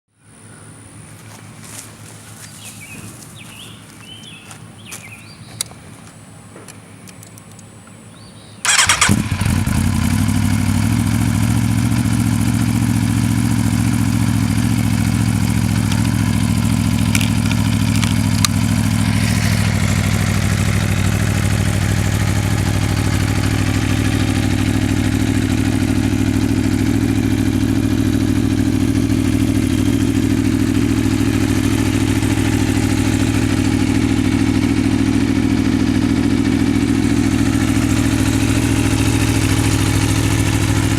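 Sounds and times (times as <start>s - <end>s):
motorcycle engine idling: 0.7s - 6.4s, 7.7s - 40.9s
starter motor cranking: 8.7s - 9.9s.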